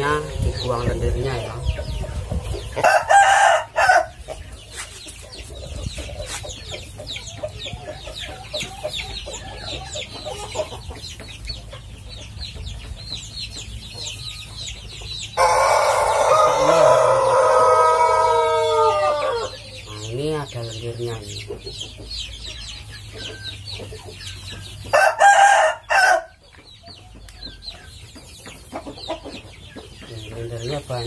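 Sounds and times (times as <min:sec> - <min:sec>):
chickens clucking and chirping: 0:00.0 - 0:31.0
rooster crowing: 0:02.8 - 0:04.2, 0:15.4 - 0:19.7, 0:24.9 - 0:26.3
chicken squawk: 0:15.4 - 0:19.7.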